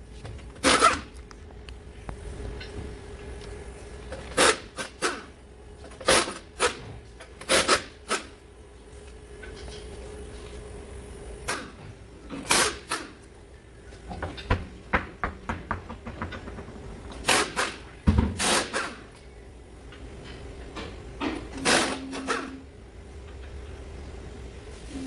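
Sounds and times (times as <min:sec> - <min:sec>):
steady low hum: 0:00.0 - 0:25.0
irregular clicks and knocks: 0:14.1 - 0:17.3.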